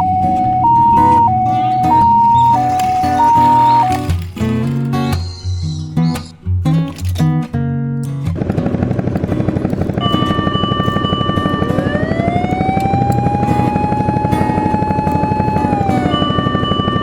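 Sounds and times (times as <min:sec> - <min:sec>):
fire engine siren wailing: 0:00.0 - 0:04.2, 0:10.0 - 0:17.0.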